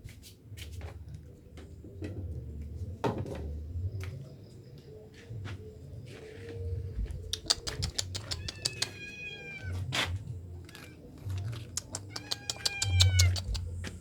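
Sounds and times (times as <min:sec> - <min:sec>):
sharp clicks and ticks: 0:07.3 - 0:09.0, 0:11.4 - 0:13.9
cat meowing: 0:07.7 - 0:13.8.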